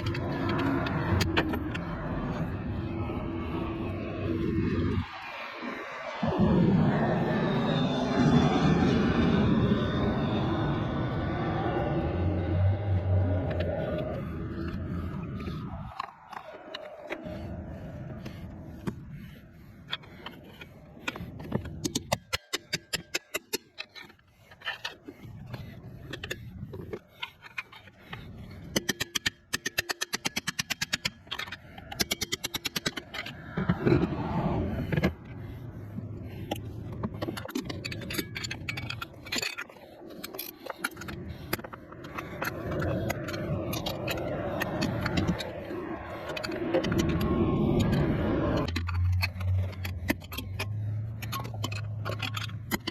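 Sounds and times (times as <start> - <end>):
low rumble: 0.0 - 21.8, 40.6 - 52.9
steady low hum: 0.0 - 22.3.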